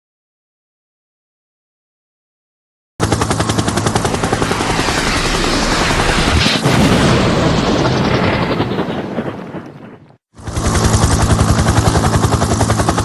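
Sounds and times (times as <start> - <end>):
helicopter rotor chopping: 3.0 - 13.0.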